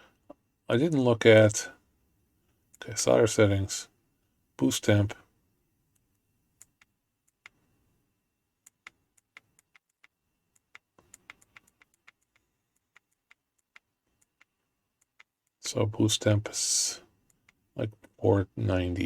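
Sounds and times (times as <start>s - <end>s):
small buttons clicking: 8.6s - 15.6s.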